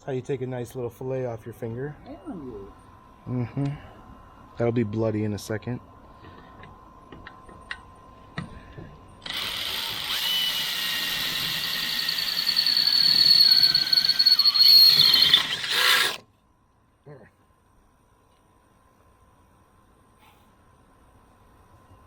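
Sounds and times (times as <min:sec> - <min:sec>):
power tool whining cutting metal: 0:09.2 - 0:16.2.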